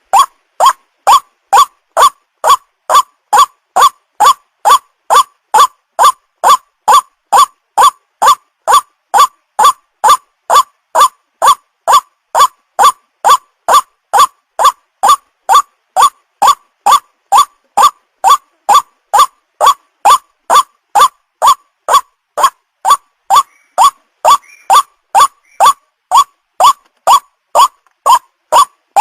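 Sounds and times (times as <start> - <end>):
bird call rising in pitch: 22.9 - 25.8.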